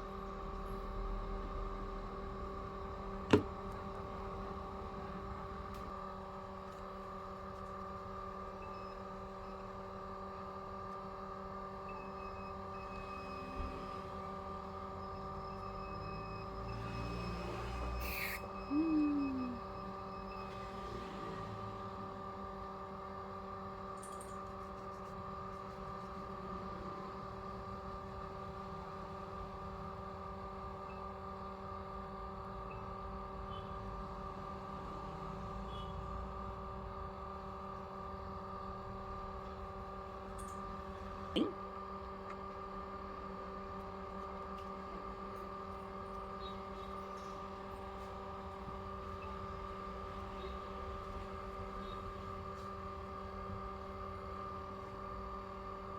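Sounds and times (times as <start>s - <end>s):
electrical hum: 0.0s - 20.8s.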